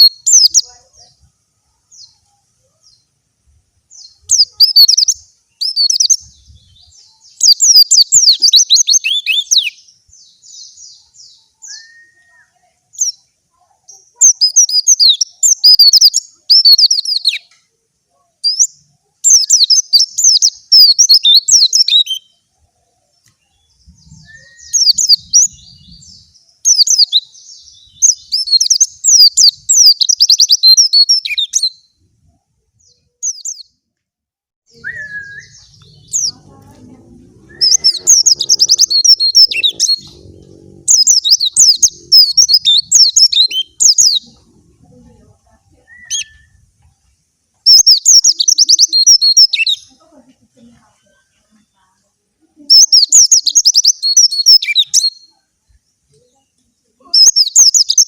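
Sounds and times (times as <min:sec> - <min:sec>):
bird warbling song: 0:03.9 - 0:13.3, 0:23.2 - 0:31.9, 0:34.7 - 0:46.7.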